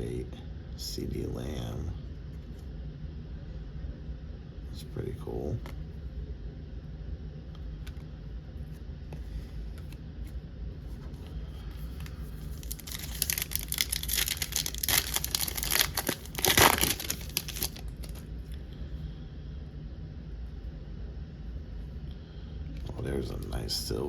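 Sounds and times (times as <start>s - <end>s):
wrapper tearing and crinkling: 12.5s - 18.2s.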